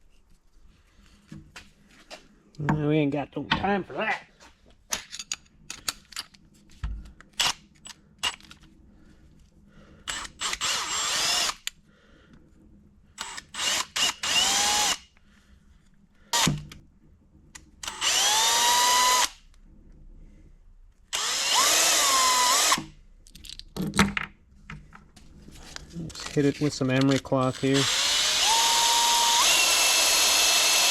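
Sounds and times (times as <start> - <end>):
power tool grinding metal: 27.5 - 30.9.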